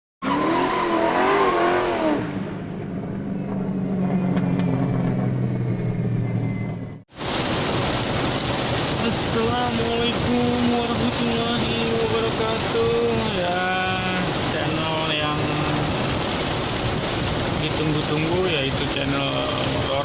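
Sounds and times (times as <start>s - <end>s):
car engine revving: 0.2s - 7.0s
steady rushing noise: 7.2s - 20.0s.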